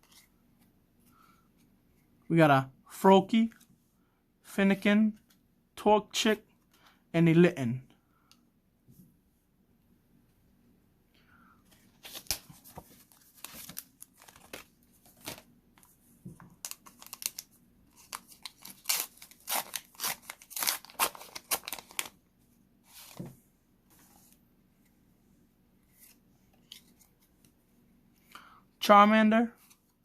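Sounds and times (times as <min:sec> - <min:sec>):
wrapper tearing and crinkling: 0:16.6 - 0:22.2.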